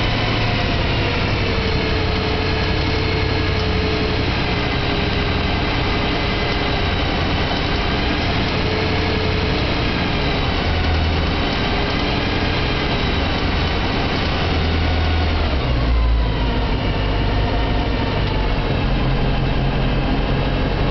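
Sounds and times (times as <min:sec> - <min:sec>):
engine clicking: 0:00.0 - 0:15.8
car engine running: 0:00.0 - 0:20.9.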